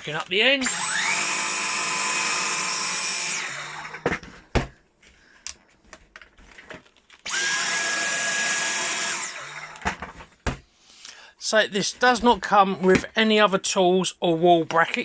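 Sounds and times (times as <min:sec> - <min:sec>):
vacuum motor whining: 0:00.6 - 0:04.3, 0:07.2 - 0:10.0.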